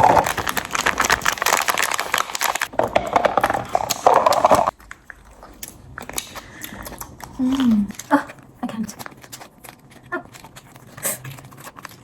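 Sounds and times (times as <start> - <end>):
mouth clicks and chewing: 3.8 - 12.0.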